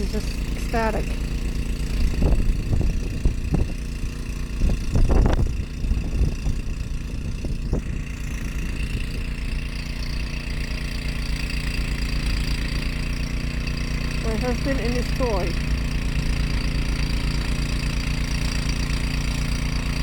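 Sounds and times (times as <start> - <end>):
snow blower engine running: 0.0 - 20.0.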